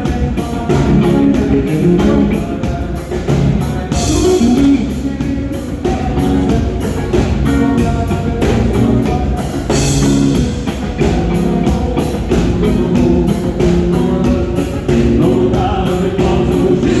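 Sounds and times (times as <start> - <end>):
band playing: 0.0 - 17.0
drum kit beat: 0.0 - 17.0.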